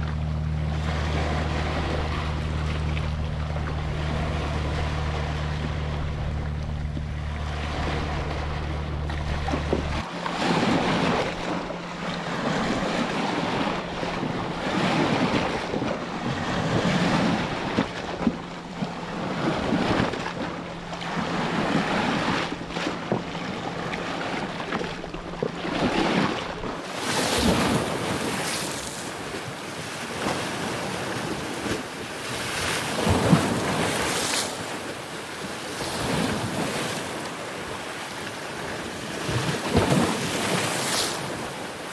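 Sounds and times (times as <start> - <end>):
low hum: 0.0 - 26.8
sea waves breaking: 0.0 - 41.9.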